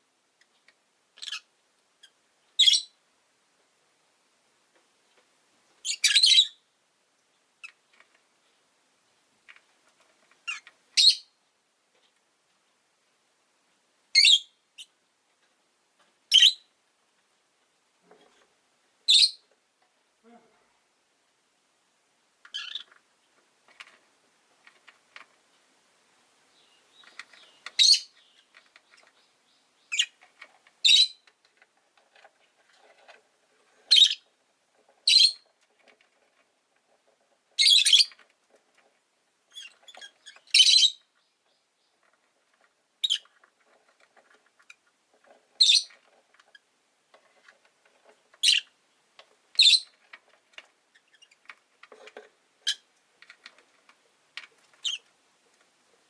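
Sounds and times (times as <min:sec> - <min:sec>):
lovebirds chirping: 0:01.1 - 0:03.0, 0:05.8 - 0:06.7, 0:10.4 - 0:11.4, 0:14.2 - 0:15.0, 0:19.0 - 0:19.5, 0:22.5 - 0:23.0, 0:26.4 - 0:31.3, 0:33.7 - 0:34.4, 0:35.0 - 0:35.5, 0:37.5 - 0:38.2, 0:39.4 - 0:42.4, 0:43.0 - 0:44.9, 0:45.5 - 0:46.7, 0:48.3 - 0:50.1, 0:54.6 - 0:55.2
soft bird chatter: 0:22.4 - 0:23.9, 0:26.4 - 0:56.0.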